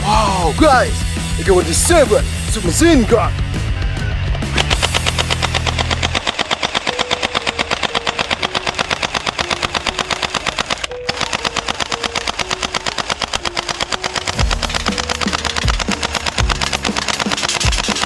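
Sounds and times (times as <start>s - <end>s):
simple background tune: 0.0s - 18.0s
submachine gun automatic fire: 4.6s - 9.6s, 10.4s - 18.0s.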